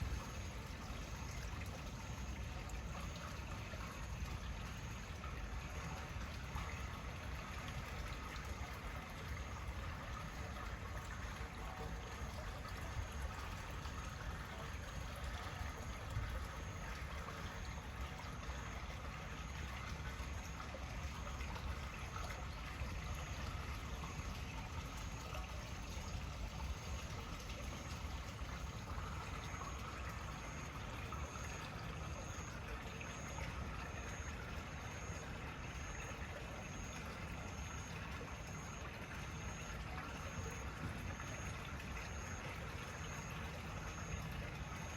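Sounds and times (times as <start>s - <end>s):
rainwater trickling: 0.0s - 44.9s.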